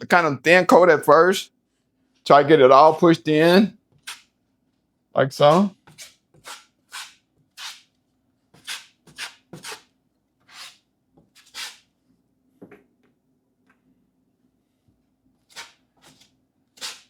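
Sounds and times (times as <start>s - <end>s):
putty knife scraping strokes: 4.0s - 4.3s, 5.4s - 7.9s, 8.6s - 11.9s, 15.5s - 17.0s.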